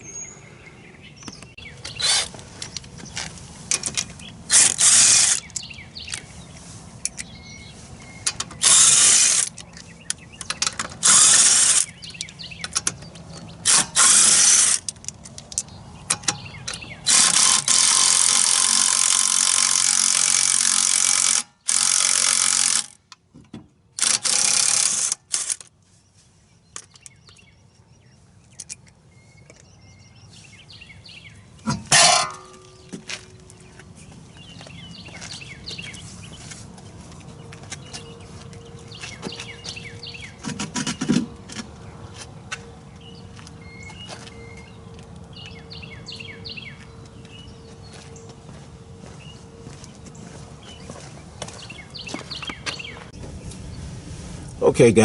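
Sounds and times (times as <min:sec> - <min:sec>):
power tool bursts: 0:04.5 - 0:05.4, 0:08.6 - 0:09.5, 0:11.0 - 0:11.9, 0:13.6 - 0:14.9, 0:17.1 - 0:23.0.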